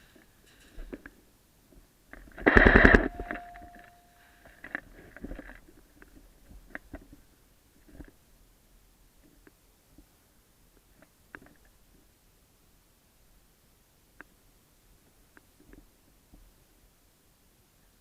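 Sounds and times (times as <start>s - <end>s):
faint clicks and knocks: 0.0s - 8.3s, 10.7s - 12.0s, 15.3s - 16.6s
airsoft gun full-auto burst: 2.4s - 3.6s.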